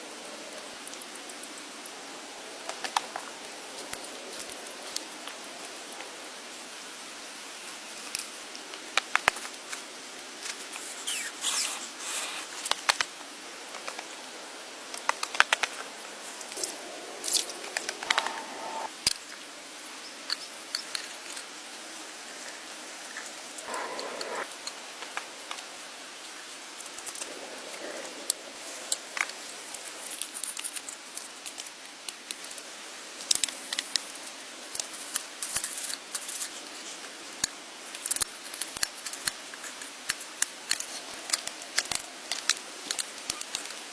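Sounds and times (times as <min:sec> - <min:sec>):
background hiss: 0:00.0 - 0:43.9.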